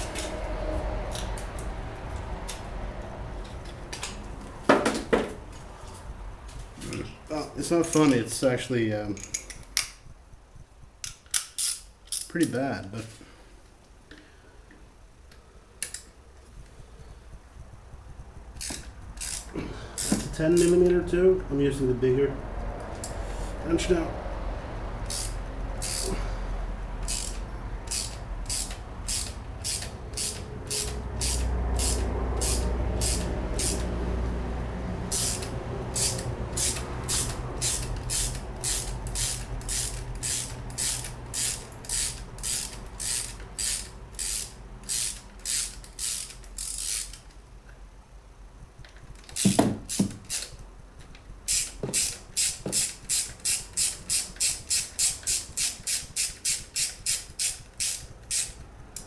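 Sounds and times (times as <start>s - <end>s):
ratchet wrench clicking: 9.2s - 10.1s, 11.0s - 12.6s, 17.9s - 21.0s, 22.6s - 34.2s, 35.1s - 47.4s, 48.7s - 59.0s
dull metal clunks: 49.4s - 50.3s.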